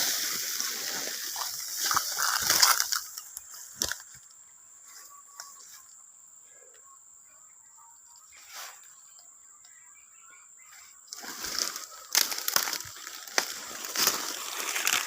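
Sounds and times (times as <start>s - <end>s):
dry vegetation crunching: 0.0s - 4.3s, 11.1s - 15.0s.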